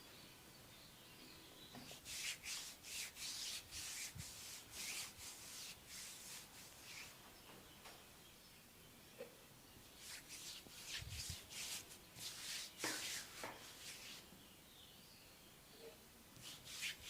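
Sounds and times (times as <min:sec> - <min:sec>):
hands rubbing over skin: 0:01.8 - 0:07.2, 0:10.0 - 0:14.3, 0:16.4 - 0:17.0.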